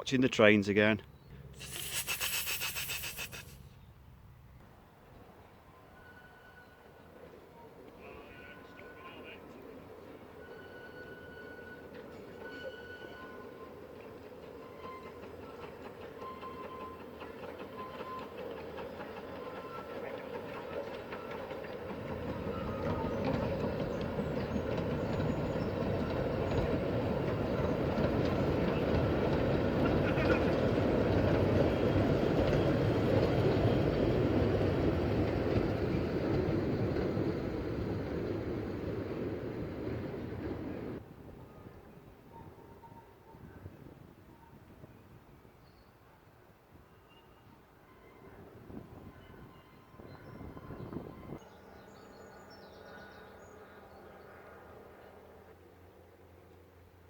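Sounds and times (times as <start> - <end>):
steam train passing: 0.0 - 3.7, 5.0 - 44.9.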